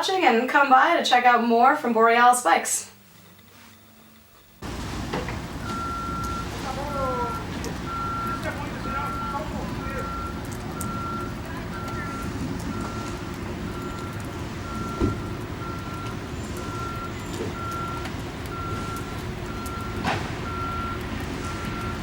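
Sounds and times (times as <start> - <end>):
low engine rumble: 4.6 - 22.0
reversing alarm beeping: 5.6 - 22.0.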